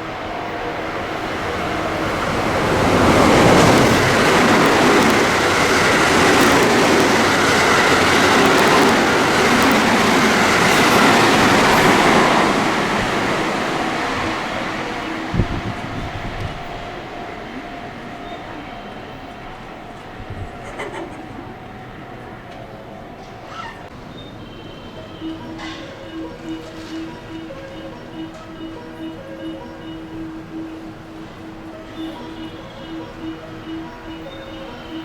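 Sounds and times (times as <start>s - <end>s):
train wheels rushing on rail: 0.0s - 24.1s.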